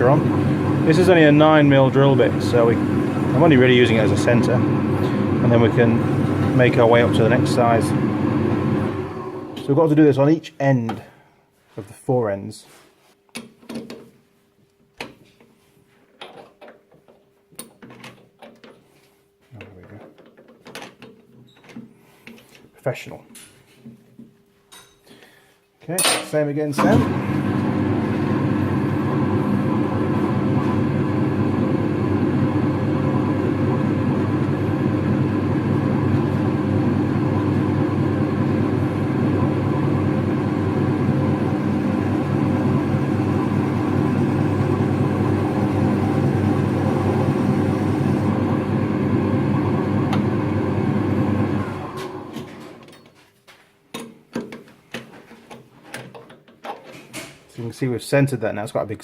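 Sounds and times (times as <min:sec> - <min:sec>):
lathe running: 0:00.0 - 0:09.9, 0:26.8 - 0:52.7
lathe running down: 0:00.0 - 0:09.9, 0:26.8 - 0:52.8.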